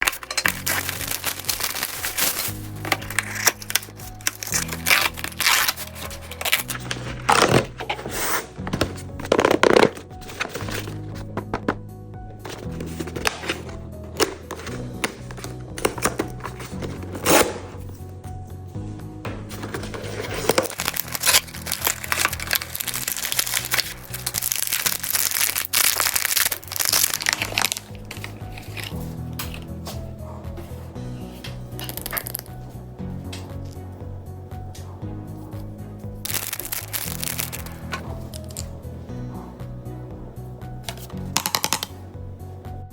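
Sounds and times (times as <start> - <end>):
packaging crinkling and tearing: 0.0 - 8.2, 8.8 - 11.7, 12.4 - 17.8, 19.6 - 30.0, 31.5 - 32.6, 36.2 - 38.7, 40.9 - 41.9
background music with steady beat: 0.0 - 42.9.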